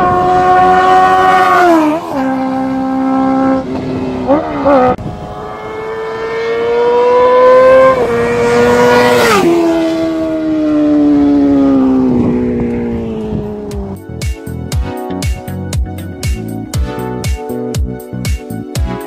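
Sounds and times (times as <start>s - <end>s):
motorcycle accelerating past: 0.0s - 14.0s.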